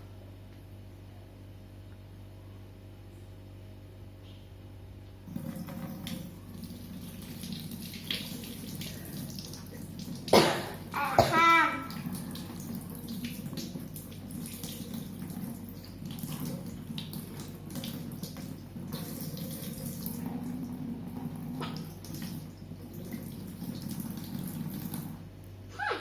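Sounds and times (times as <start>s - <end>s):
tap water running into sink: 5.3s - 25.2s
hands washing with splashes: 7.0s - 19.4s.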